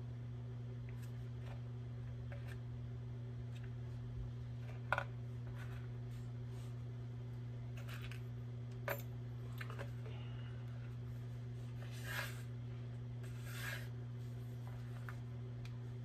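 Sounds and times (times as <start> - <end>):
steady low hum: 0.0 - 16.0
rustling scrapes: 11.6 - 12.5, 13.2 - 15.2.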